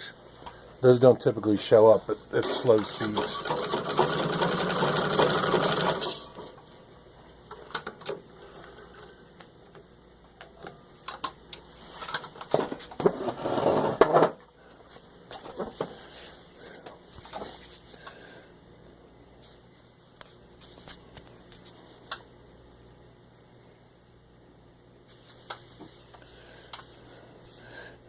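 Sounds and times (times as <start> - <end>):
treadle sewing machine running: 2.4 - 6.4
rustling and scraping: 11.7 - 14.3, 14.9 - 18.1.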